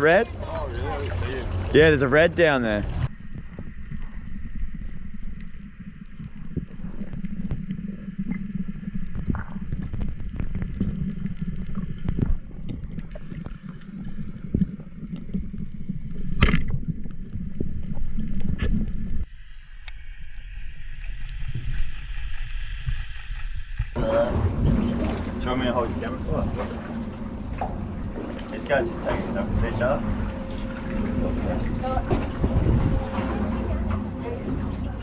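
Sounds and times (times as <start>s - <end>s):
boat rumble on water: 0.0s - 19.3s, 21.2s - 35.0s
wind on microphone: 29.4s - 34.0s.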